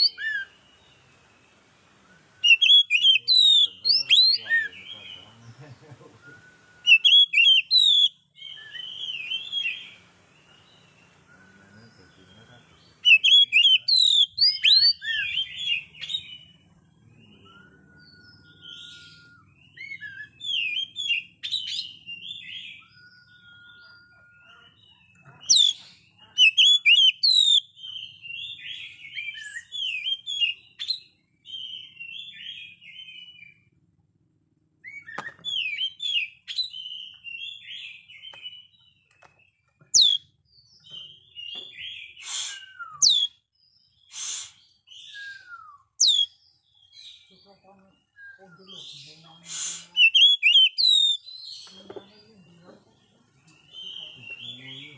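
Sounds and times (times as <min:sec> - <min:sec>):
bird twittering and chirping: 0:02.4 - 0:06.2, 0:06.8 - 0:33.6, 0:34.9 - 0:54.9
bird held whistles: 0:42.2 - 0:43.4, 0:44.1 - 0:46.4, 0:49.4 - 0:51.2.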